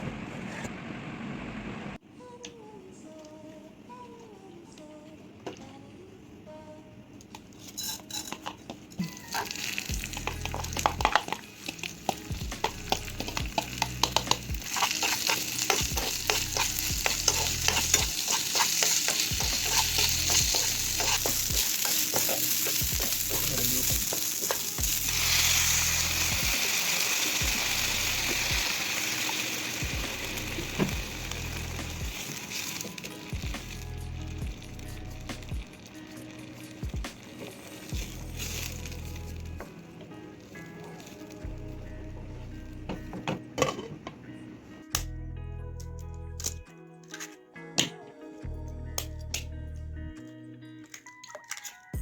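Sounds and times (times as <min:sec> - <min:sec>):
food sizzling in oil: 0:09.0 - 0:39.6
spatula scraping a pan: 0:12.8 - 0:23.5.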